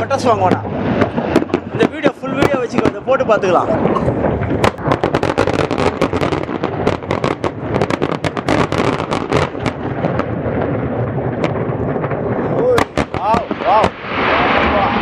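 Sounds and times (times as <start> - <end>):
low rumble: 0.0 - 7.8
fireworks bangs and crackles: 0.0 - 15.0.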